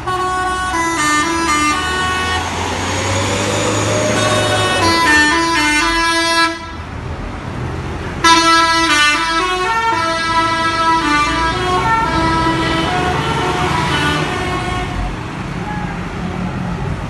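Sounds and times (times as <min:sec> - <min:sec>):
multi-tone bus horn playing a tune: 0:00.0 - 0:06.9, 0:08.2 - 0:16.0
low engine rumble: 0:00.2 - 0:07.7.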